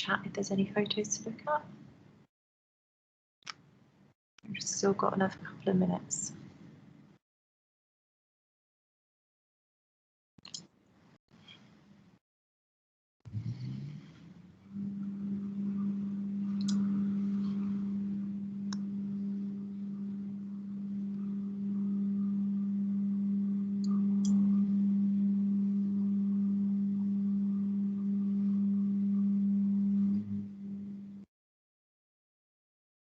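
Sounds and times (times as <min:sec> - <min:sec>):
steady low hum: 0:13.3 - 0:31.3
faint clicks: 0:16.5 - 0:16.8.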